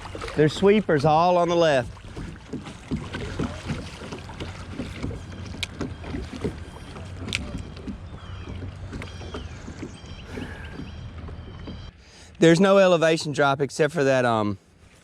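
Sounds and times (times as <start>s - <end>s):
flowing river water: 0.0s - 15.0s
water splashing around kayak: 0.0s - 15.0s.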